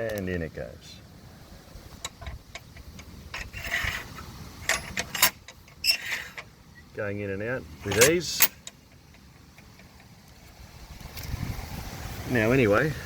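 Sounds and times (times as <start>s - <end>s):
metal rod scraping: 2.0s - 6.5s, 7.8s - 8.8s.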